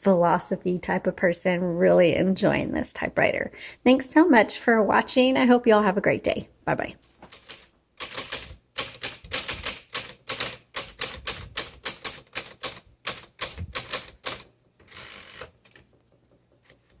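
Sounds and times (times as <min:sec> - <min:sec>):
manual typewriter typing: 0:07.3 - 0:16.0.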